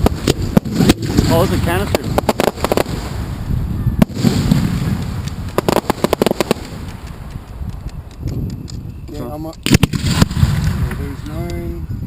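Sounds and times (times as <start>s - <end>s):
crackling fireworks pops: 0.0s - 3.3s, 4.0s - 11.7s
fireworks bang: 0.0s - 3.4s, 4.0s - 7.3s, 9.6s - 11.2s.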